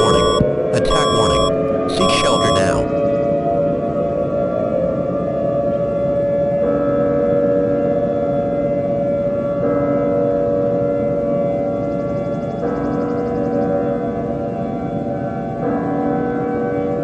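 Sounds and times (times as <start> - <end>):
civil defense siren blaring: 3.0 - 12.2.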